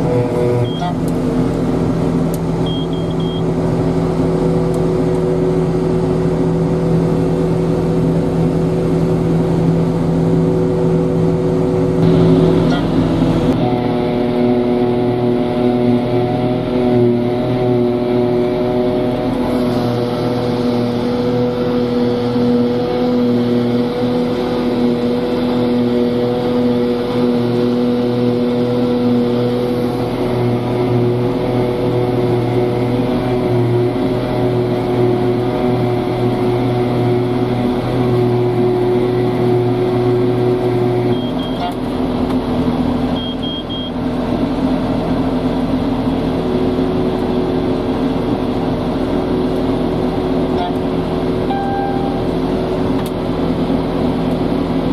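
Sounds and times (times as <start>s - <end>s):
diesel engines running under load: 0.0s - 54.9s
short high beeps: 0.6s - 1.0s, 2.6s - 3.4s, 41.1s - 41.7s, 43.2s - 43.9s, 51.5s - 52.2s.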